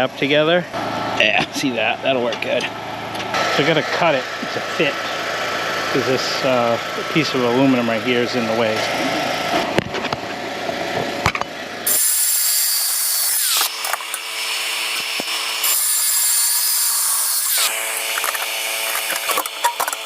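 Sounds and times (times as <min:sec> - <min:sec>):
steady low hum: 0:00.0 - 0:11.9
power tool cutting aluminum: 0:03.1 - 0:09.9, 0:10.7 - 0:20.0.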